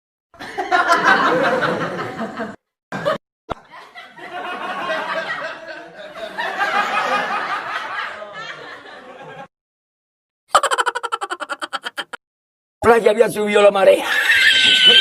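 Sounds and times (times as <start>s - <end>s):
people laughing: 0.4s - 9.5s, 10.5s - 12.2s.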